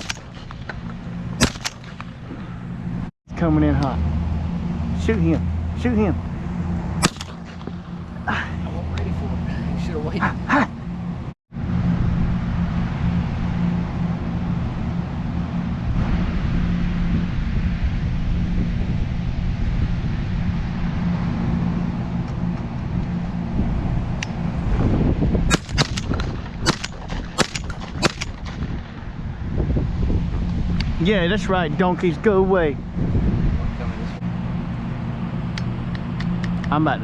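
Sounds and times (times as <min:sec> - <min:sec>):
sharp cracks: 0:00.0 - 0:02.6, 0:07.0 - 0:08.2, 0:25.5 - 0:29.1
wind buffeting microphone: 0:00.0 - 0:03.1, 0:11.6 - 0:34.2.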